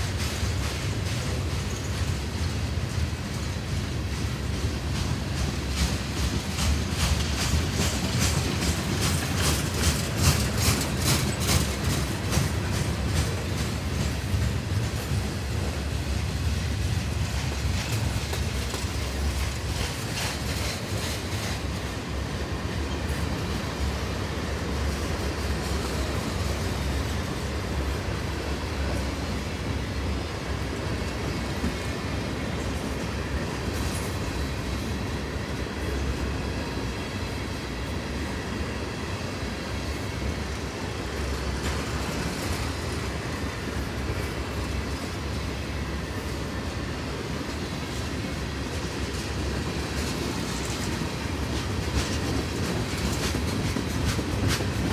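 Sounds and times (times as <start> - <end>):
wheels clicking over rail joints: 0.0 - 24.0, 47.9 - 54.9
freight train rolling past: 0.0 - 54.9.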